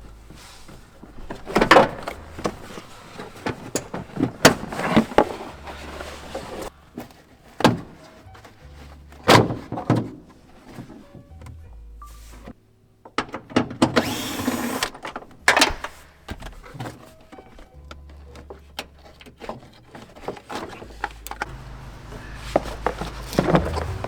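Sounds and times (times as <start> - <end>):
background music with bass: 8.1 - 12.6, 20.8 - 24.0
loud clunks and knocks: 21.4 - 24.0.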